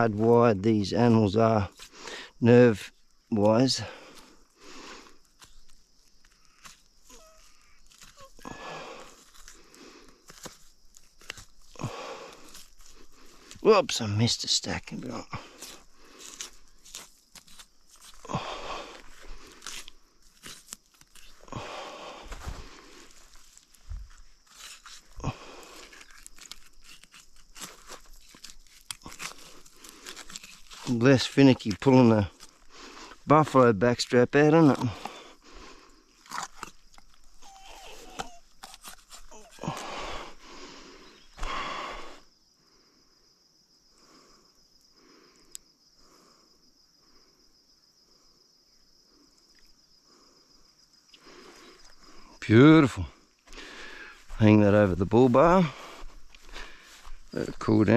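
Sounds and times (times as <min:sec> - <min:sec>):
insects droning: 0:00.0 - 0:57.9
small crackles: 0:01.7 - 0:13.7, 0:14.9 - 0:39.9.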